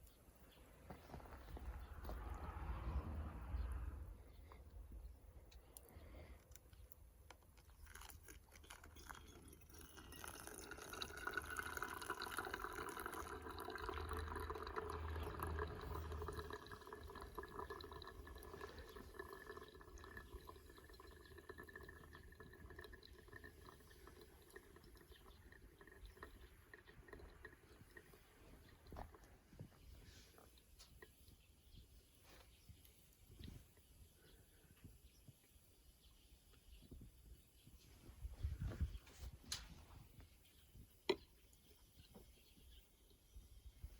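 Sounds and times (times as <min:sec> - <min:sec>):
water poured from kettle: 0:07.6 - 0:29.1.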